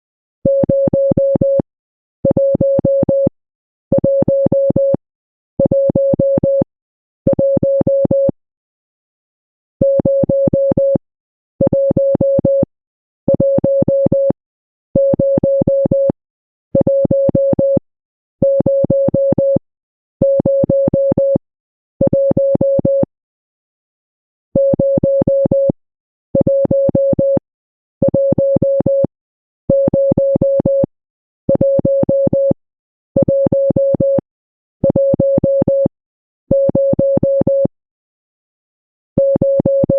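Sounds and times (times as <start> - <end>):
morse code beep tones: 3.9 - 5.0, 5.6 - 6.7, 7.3 - 8.4, 11.6 - 12.7, 16.8 - 17.8, 20.2 - 21.4, 22.0 - 23.1, 24.6 - 25.8, 26.4 - 27.4, 28.0 - 29.1, 29.7 - 30.9, 31.5 - 32.6, 33.2 - 34.2, 34.8 - 35.9, 36.5 - 37.7, 39.2 - 39.9.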